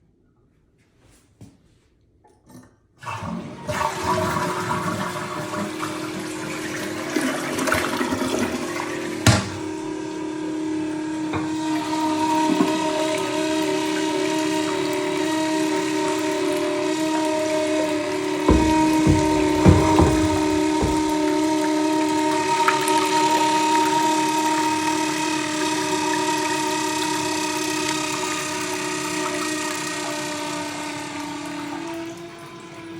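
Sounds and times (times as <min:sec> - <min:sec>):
toilet flushing water rushing: 0:03.0 - 0:32.9
sharp knock: 0:18.5 - 0:21.2
toilet handle click: 0:18.5 - 0:21.2.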